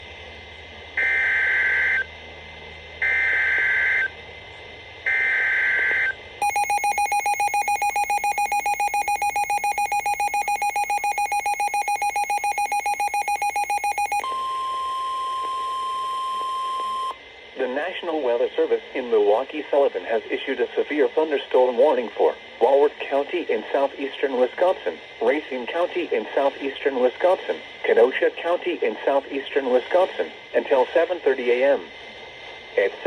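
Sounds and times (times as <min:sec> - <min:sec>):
steady warning alarm tone: 0:01.0 - 0:02.1, 0:03.0 - 0:04.1, 0:05.1 - 0:17.2
warbling digital data tones: 0:05.8 - 0:17.2
harsh buzzy pulsing alert tone: 0:06.4 - 0:16.1.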